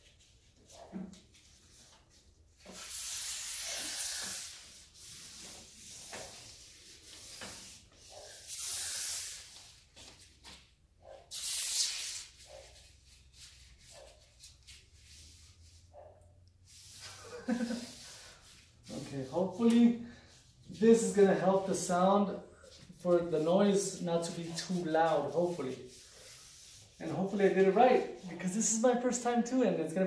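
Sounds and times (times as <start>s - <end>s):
rubbing and handling noises: 0.0s - 30.0s
aerosol can spraying: 2.6s - 9.8s, 11.3s - 12.7s.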